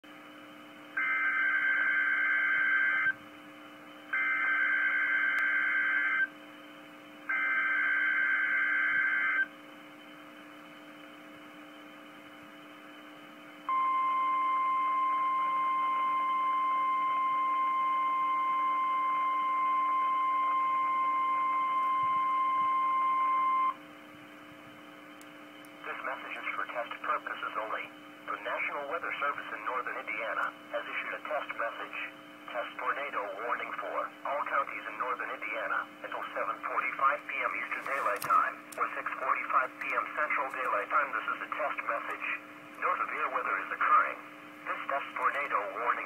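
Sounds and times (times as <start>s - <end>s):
faint steady hum: 0.0s - 46.0s
steady warning alarm tone: 0.9s - 3.2s, 4.1s - 6.4s, 7.3s - 9.6s, 13.6s - 23.8s.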